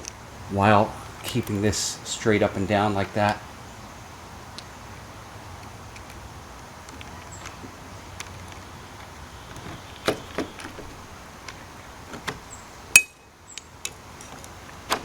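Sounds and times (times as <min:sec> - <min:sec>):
lock parts knocking on door: 0:09.0 - 0:12.5.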